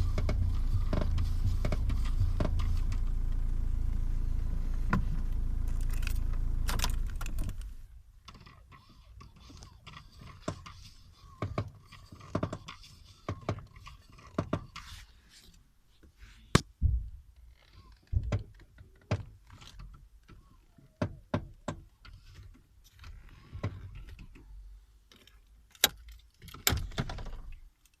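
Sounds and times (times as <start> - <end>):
sharp clicks and knocks: 0.0 - 3.1, 18.0 - 22.6
diesel car engine running: 0.0 - 8.0.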